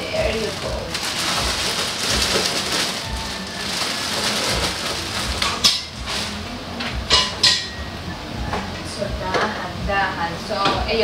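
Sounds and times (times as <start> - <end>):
sharp plastic crackles: 0.0 - 7.6
plastic packaging rustling: 0.0 - 7.7.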